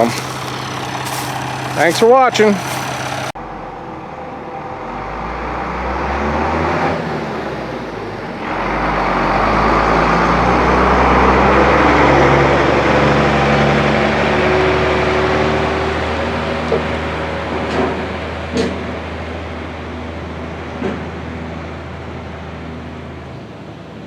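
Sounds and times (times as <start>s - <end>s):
diesel farm machine engine running: 0.0s - 3.4s.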